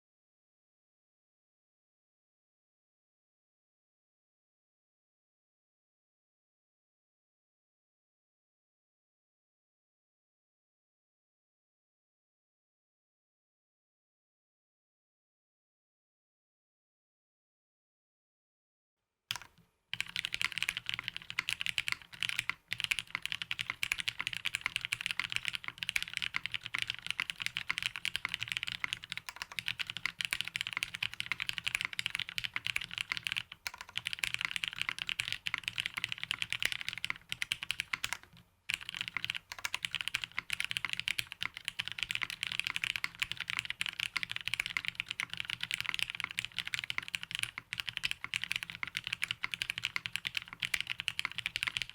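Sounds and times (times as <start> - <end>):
fast mechanical keyboard typing: 19.3 - 51.9.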